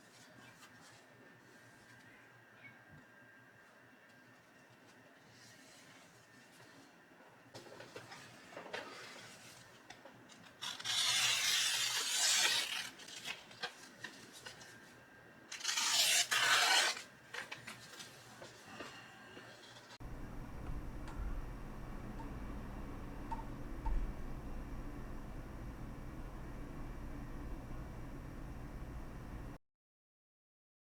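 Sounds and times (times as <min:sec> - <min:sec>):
knife blade rubbing on abrasive: 0:10.6 - 0:13.1, 0:15.5 - 0:17.1.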